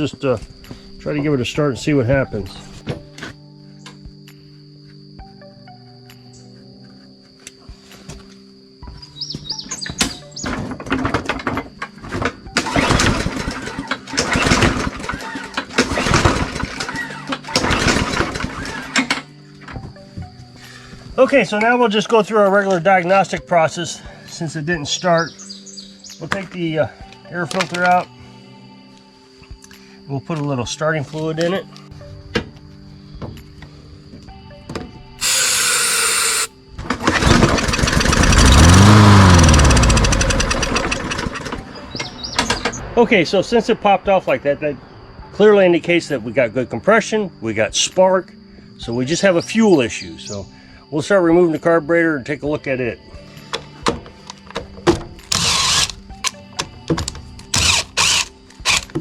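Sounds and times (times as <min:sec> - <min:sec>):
mower engine pull-start cranking: 0:12.2 - 0:19.2, 0:35.2 - 0:41.6, 0:55.3 - 0:56.4, 0:57.0 - 0:59.0
aerosol can hissing: 0:35.2 - 0:36.5.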